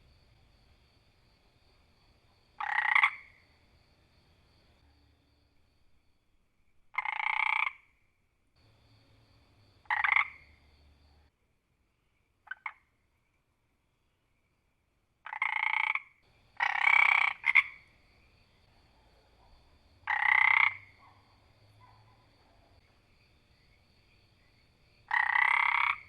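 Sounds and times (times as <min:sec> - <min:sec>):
frog croaking: 0:02.6 - 0:03.5, 0:06.9 - 0:08.0, 0:08.6 - 0:11.2, 0:12.4 - 0:12.9, 0:15.2 - 0:22.9, 0:25.0 - 0:26.0.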